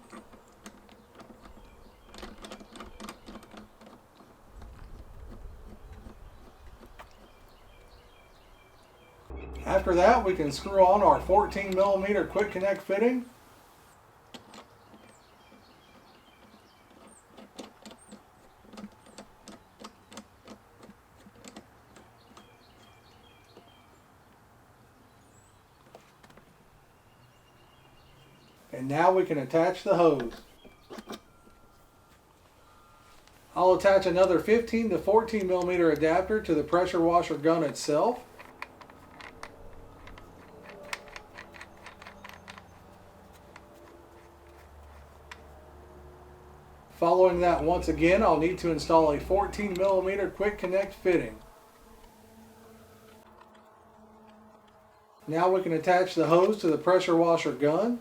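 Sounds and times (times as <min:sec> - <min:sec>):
birds chirping: 0:00.0 - 0:58.0
metal fittings clicking and tapping: 0:37.7 - 0:44.6.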